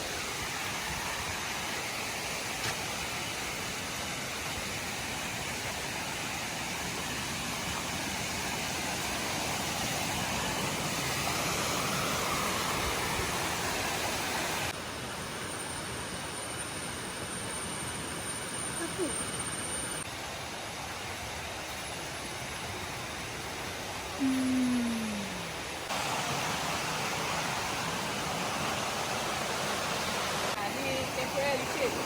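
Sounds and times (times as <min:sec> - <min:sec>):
waterfall rushing: 0:24.7 - 0:32.0.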